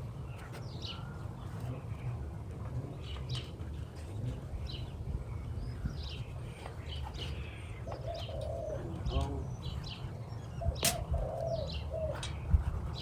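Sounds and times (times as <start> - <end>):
birds chirping: 0.0 - 13.0
wind rumble on microphone: 1.6 - 13.0.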